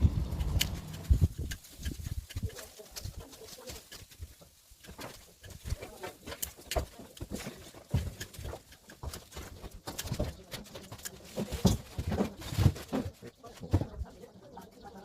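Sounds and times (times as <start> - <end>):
leaves rustling: 0.0 - 7.8
branches snapping: 0.0 - 12.9.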